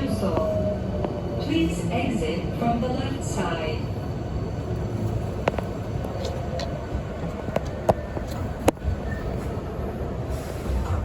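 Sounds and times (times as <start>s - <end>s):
train rumbling on track: 0.0s - 11.0s.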